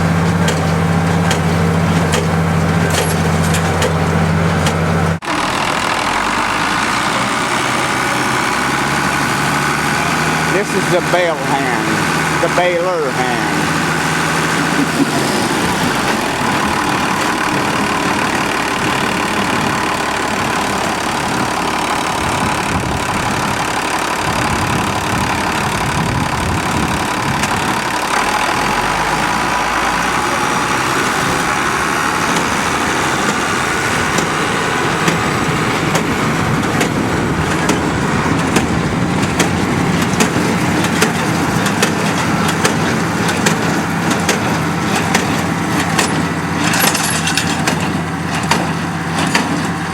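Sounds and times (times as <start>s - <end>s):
hay baler working: 0.0s - 49.9s
tractor engine running: 0.0s - 49.9s
sharp clicks and knocks: 0.2s - 4.9s, 35.0s - 49.8s.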